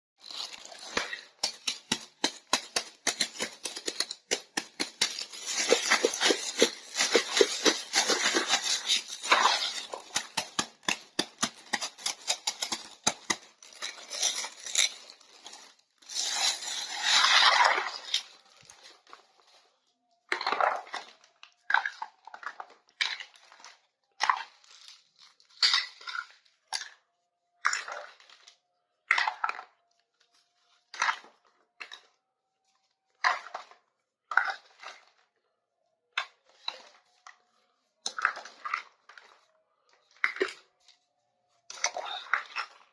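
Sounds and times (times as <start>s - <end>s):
plastic packaging crinkling: 0.2s - 17.3s.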